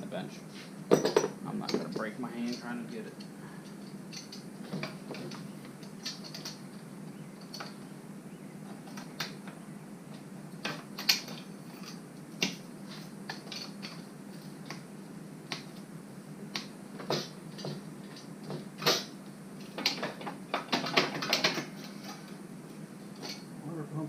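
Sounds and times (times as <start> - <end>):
steady low hum: 0.0 - 24.0
metal tools clicking and clinking: 0.9 - 2.8, 3.6 - 6.6.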